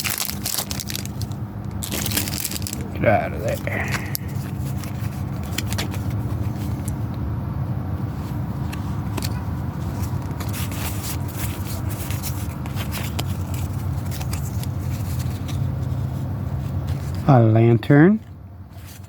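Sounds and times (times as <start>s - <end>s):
foil wrapper crinkling: 0.0s - 6.9s
steady low hum: 0.0s - 19.0s
cards sliding and scraping: 3.9s - 7.0s, 8.7s - 17.2s.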